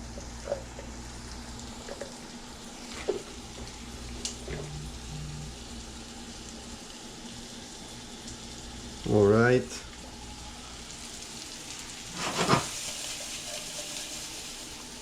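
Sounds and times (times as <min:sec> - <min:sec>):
food sizzling in oil: 0:00.0 - 0:15.0.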